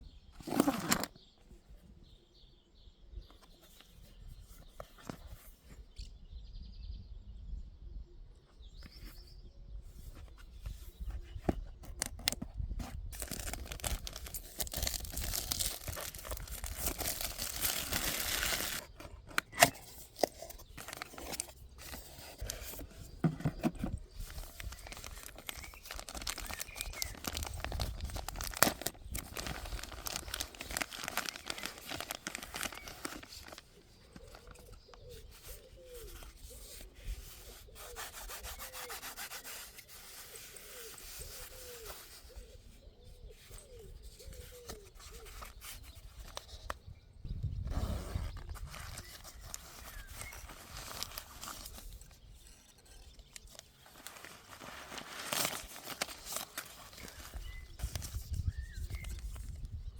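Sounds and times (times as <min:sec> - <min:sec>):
packaging crinkling and tearing: 0:00.4 - 0:01.1, 0:11.6 - 0:34.9, 0:48.3 - 0:59.6.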